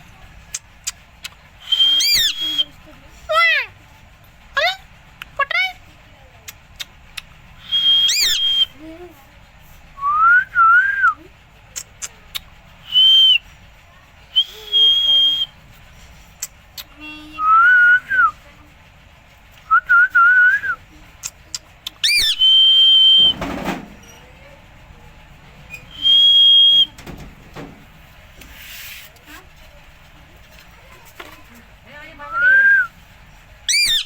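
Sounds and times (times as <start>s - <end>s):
clear whistles: 1.6s - 2.8s, 7.6s - 8.8s, 10.0s - 11.2s, 12.8s - 13.5s, 14.3s - 15.6s, 17.4s - 18.4s, 19.7s - 20.8s, 22.0s - 23.4s, 25.7s - 27.2s, 32.3s - 33.0s, 33.7s - 34.0s.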